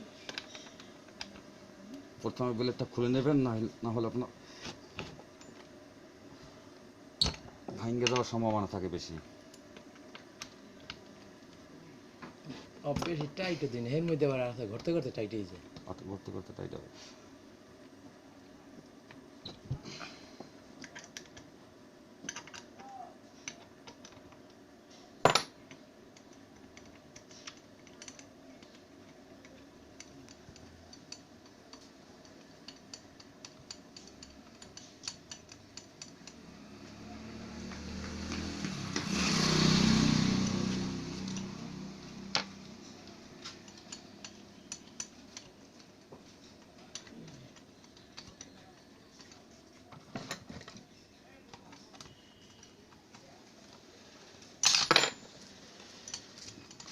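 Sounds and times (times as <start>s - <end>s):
metal clicks of hand tools: 25.7s - 36.6s, 41.2s - 41.6s, 42.4s - 49.4s, 55.8s - 56.9s.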